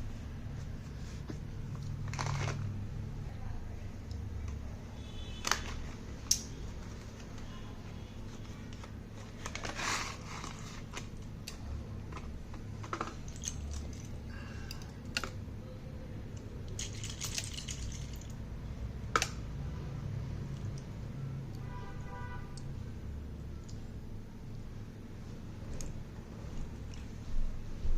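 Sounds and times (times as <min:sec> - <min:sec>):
low steady hum: 0:00.0 - 0:27.9
plastic packaging handled: 0:01.7 - 0:02.8, 0:08.2 - 0:11.3.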